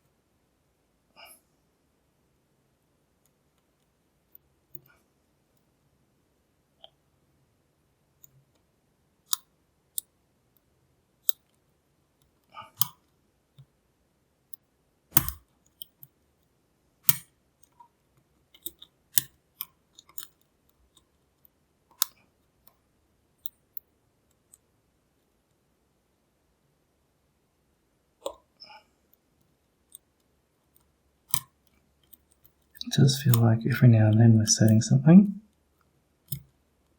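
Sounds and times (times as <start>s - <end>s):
lock pick clicking in padlock: 15.1s - 16.0s, 17.0s - 17.3s, 20.0s - 20.4s, 31.3s - 32.5s.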